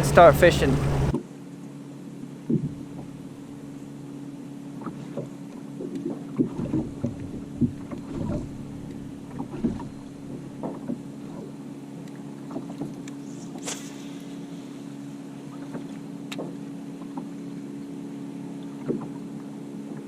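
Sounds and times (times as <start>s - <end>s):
knocks and clatter on boat: 0.0s - 1.2s, 2.4s - 4.0s, 4.7s - 13.2s, 15.4s - 18.0s, 18.6s - 20.0s
electric boat motor humming: 0.0s - 20.0s.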